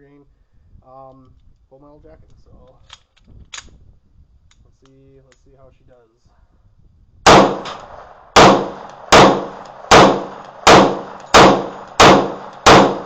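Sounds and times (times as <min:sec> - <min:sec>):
pistol shots: 0:07.3 - 0:13.0.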